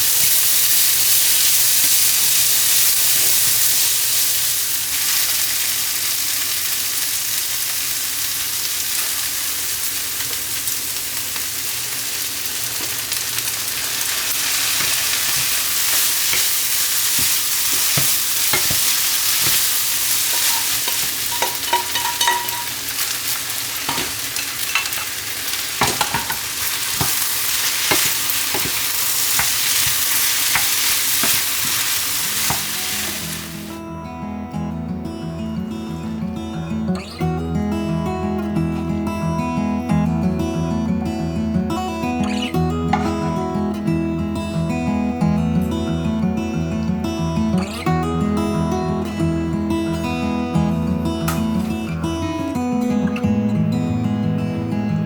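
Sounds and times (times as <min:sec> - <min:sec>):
food sizzling in frying pan: 0:00.0 - 0:33.8
utensil scraping pan: 0:14.3 - 0:22.7.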